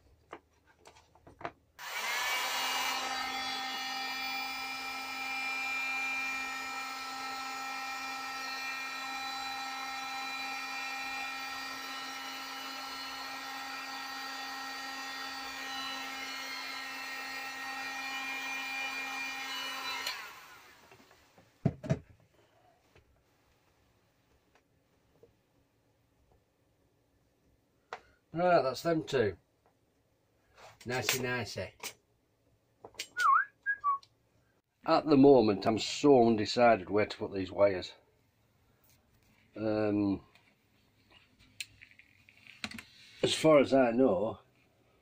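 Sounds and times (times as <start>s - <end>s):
heat gun motor whine: 1.8s - 21.1s.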